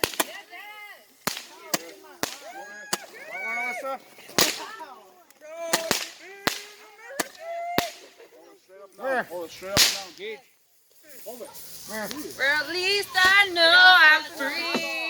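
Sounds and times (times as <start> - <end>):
fireworks cracking: 0.0 - 8.6, 9.3 - 15.0.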